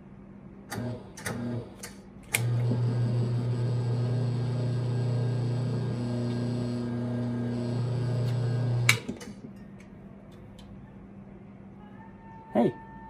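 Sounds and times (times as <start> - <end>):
motor humming: 2.3 - 9.1.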